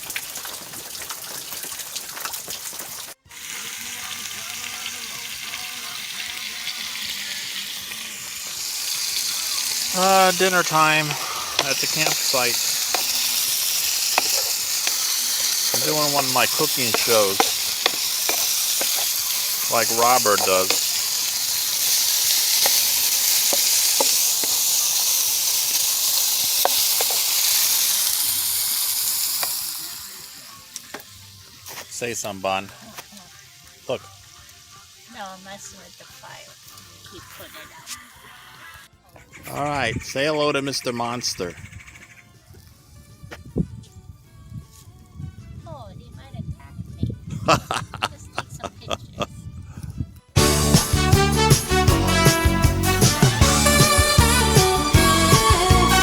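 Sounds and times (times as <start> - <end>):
rain pattering: 0.0 - 3.2, 8.4 - 30.2
food frying and sizzling: 0.0 - 38.9, 50.4 - 56.0
steady hiss: 3.0 - 37.6.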